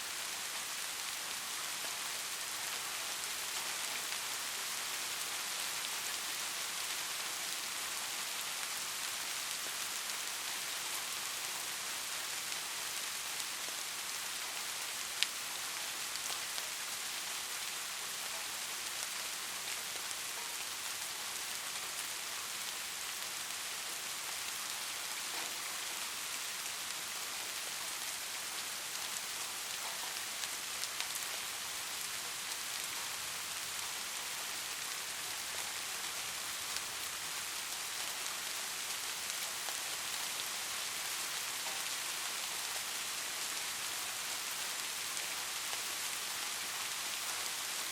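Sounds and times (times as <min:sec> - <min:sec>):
steady rain hiss: 0:00.0 - 0:47.9.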